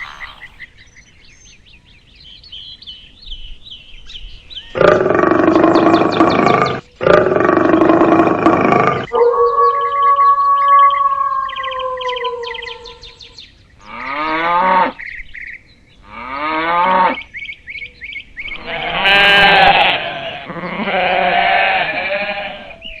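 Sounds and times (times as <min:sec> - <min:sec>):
sheep bleating: 0:18.5 - 0:22.8.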